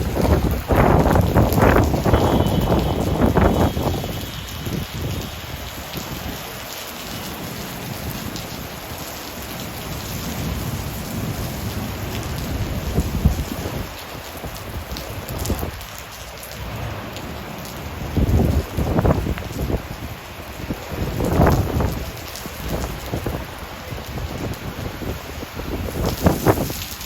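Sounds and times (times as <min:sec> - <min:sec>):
thunder rumbling: 0:00.0 - 0:06.3
rain falling: 0:00.0 - 0:27.0.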